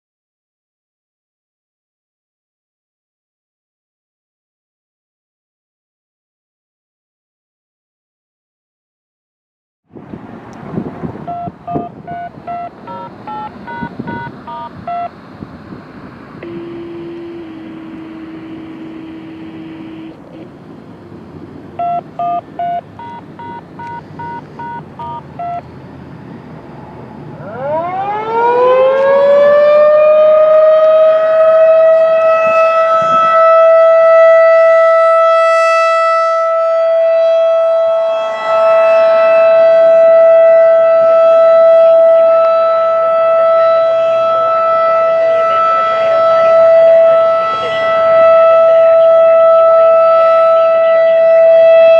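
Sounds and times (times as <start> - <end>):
warning siren winding up: 11.2 - 15.1, 27.4 - 35.4, 36.0 - 51.9
touch-tone beeps: 11.3 - 15.1, 21.8 - 25.6.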